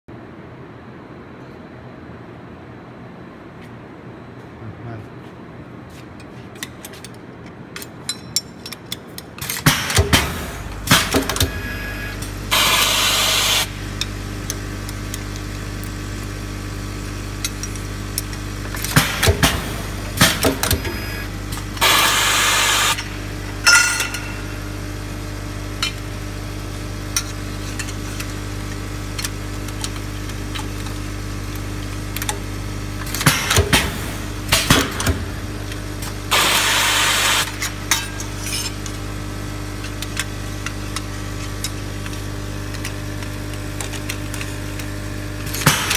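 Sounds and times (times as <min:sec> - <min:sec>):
riveting machine motor hum: 0:10.0 - 0:23.6.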